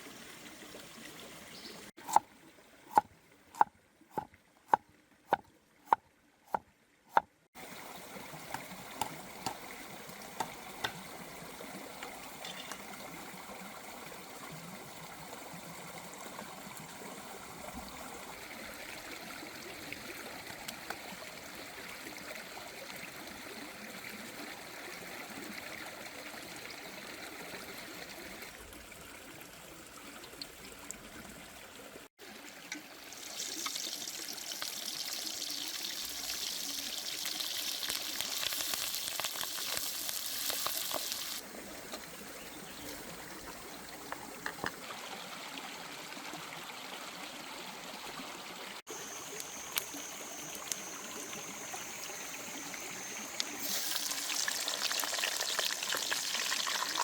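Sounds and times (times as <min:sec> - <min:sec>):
water trickling: 0:07.6 - 0:23.5, 0:28.1 - 0:45.3, 0:48.8 - 0:57.0.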